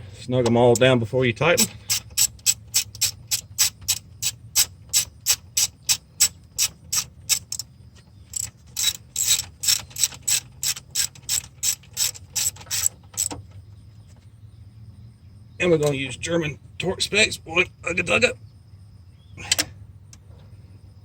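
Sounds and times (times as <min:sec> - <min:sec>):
ratchet wrench clicking: 0:01.6 - 0:07.7, 0:08.3 - 0:13.4.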